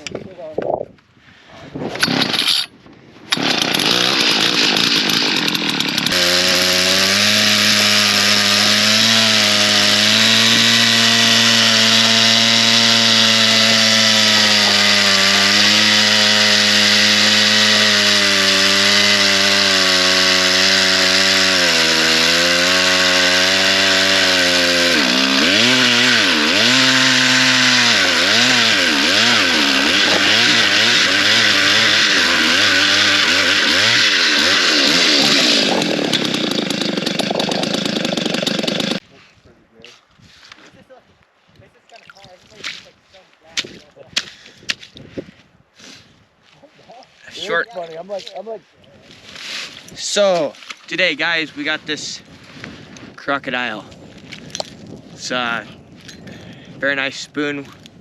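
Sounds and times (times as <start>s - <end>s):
small gasoline engine running: 2.0s - 2.6s, 3.3s - 39.0s.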